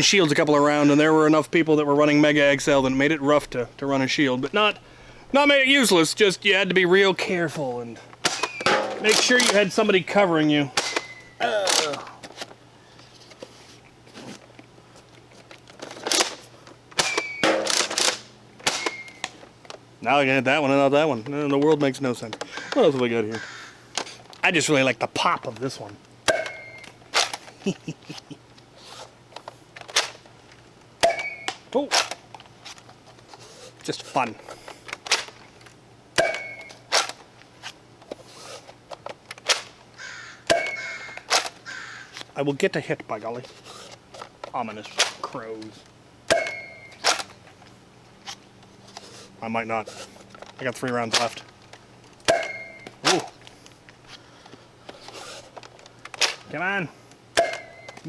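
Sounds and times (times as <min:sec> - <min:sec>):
handling knocks: 0:08.2 - 0:09.8, 0:17.0 - 0:19.4, 0:46.3 - 0:47.3, 0:52.2 - 0:53.4, 0:57.4 - 0:58.0
foam dart blaster popping: 0:18.6 - 0:19.0.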